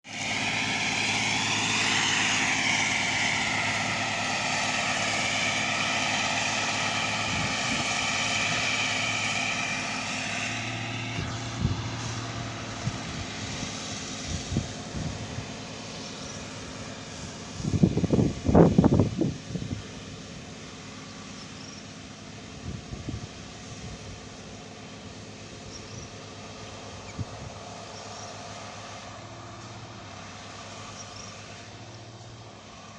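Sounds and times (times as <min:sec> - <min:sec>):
machine engine drone: 0:00.0 - 0:32.9
high whining tones: 0:00.1 - 0:16.7.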